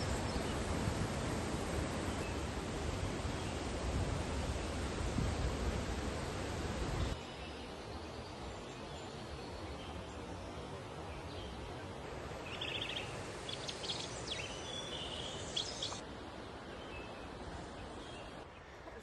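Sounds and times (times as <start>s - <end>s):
small birds chirping: 7.0s - 16.0s.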